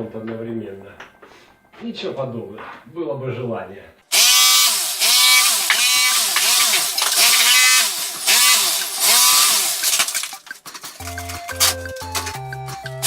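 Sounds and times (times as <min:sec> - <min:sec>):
electric power tool motor: 0:04.1 - 0:10.5.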